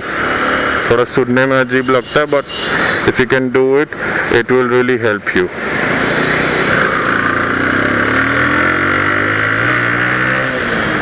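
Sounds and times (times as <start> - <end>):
wind and road noise: 0.0 - 11.0
motorcycle engine accelerating: 5.8 - 11.0.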